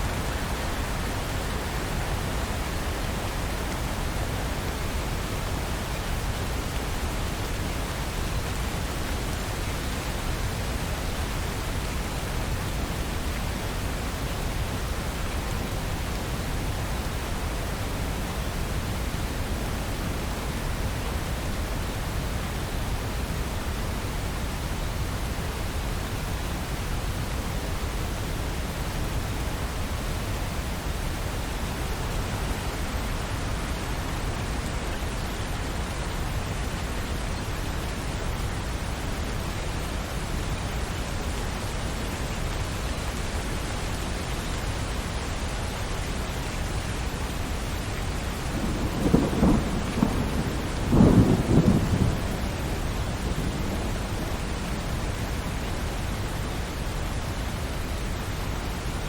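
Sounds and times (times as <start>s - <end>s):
steady rainfall: 0.0s - 59.0s
thunder rumbling: 48.5s - 55.3s.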